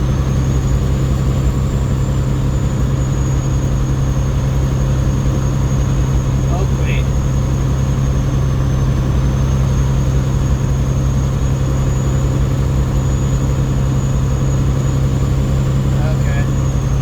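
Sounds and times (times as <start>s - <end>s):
diesel engine droning: 0.0s - 17.0s.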